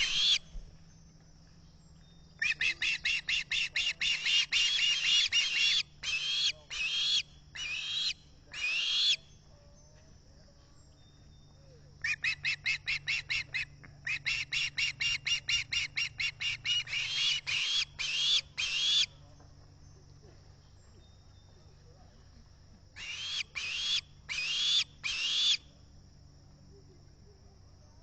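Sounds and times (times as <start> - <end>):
osprey shrill whistled calls: 0.0 - 0.4, 2.4 - 9.2, 14.1 - 19.1, 23.0 - 25.6.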